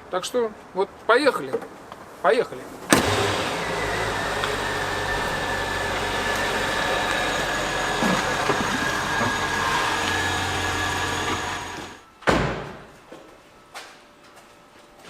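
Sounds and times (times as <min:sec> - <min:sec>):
vehicle engine running: 0:03.0 - 0:12.0.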